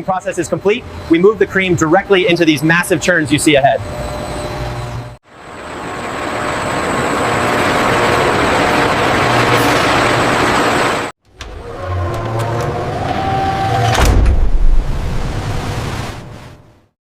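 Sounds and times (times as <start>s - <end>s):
factory machinery rushing: 3.0s - 16.6s
low hum: 3.8s - 16.8s.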